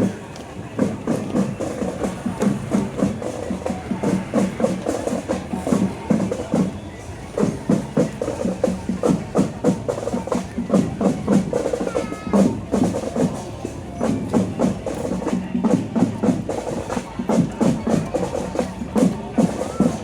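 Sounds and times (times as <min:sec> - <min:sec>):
marching drums playing: 0:00.0 - 0:20.0.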